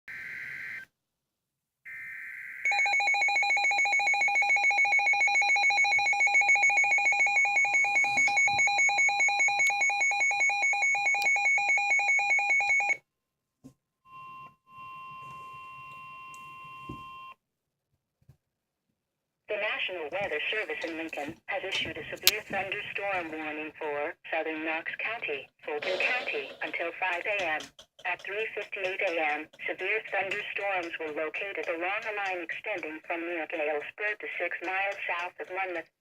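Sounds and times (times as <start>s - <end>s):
data tone bursts: 1.9s - 10.3s
steady alert tone: 25.7s - 31.2s
rapidly pulsing alert tone: 25.7s - 33.1s.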